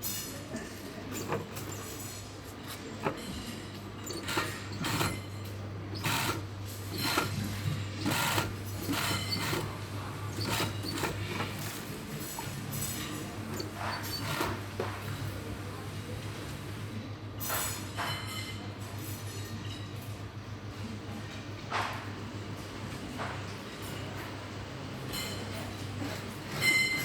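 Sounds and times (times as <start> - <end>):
sewing machine stitching: 4.0 - 16.9.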